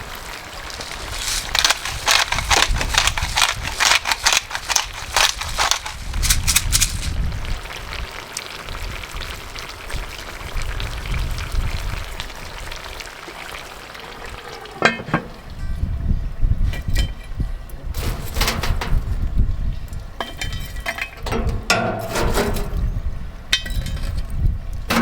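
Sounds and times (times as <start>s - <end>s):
food sizzling in a pot: 0.0s - 15.5s
clattering and scraping: 0.8s - 7.2s, 14.8s - 15.5s, 17.9s - 19.2s, 20.2s - 22.9s
metal clank: 14.8s - 15.5s, 18.0s - 19.2s, 20.2s - 22.9s.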